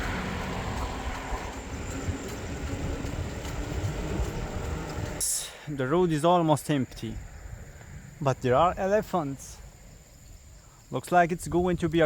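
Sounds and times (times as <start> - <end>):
faint engine hum: 0.0 - 5.2
vehicle rumble in motion: 0.0 - 5.8.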